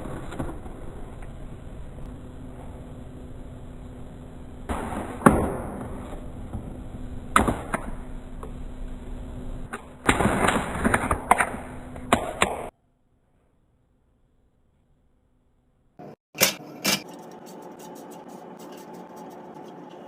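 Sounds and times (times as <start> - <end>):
faint steady hum: 0.0 - 10.1.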